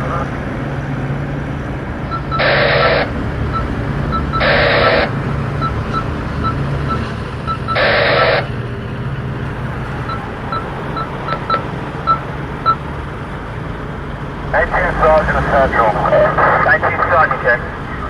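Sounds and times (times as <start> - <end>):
vehicle engine hum: 0.0 - 18.0
two-way radio static bursts: 2.1 - 8.6, 10.6 - 12.3, 14.5 - 18.0.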